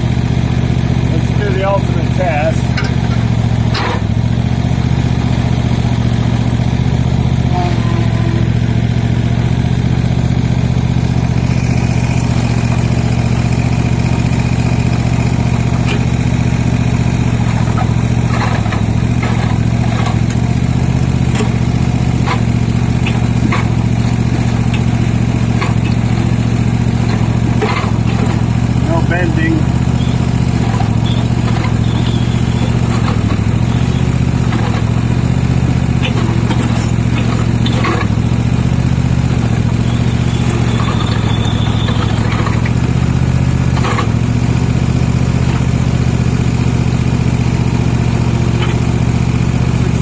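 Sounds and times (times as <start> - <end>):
mower engine running: 0.0 - 50.0.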